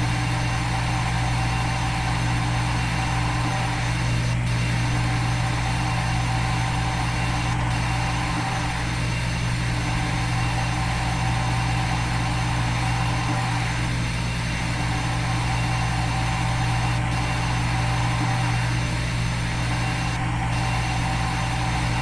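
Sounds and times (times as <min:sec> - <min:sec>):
simulated milling machine drone: 0:00.0 - 0:22.0.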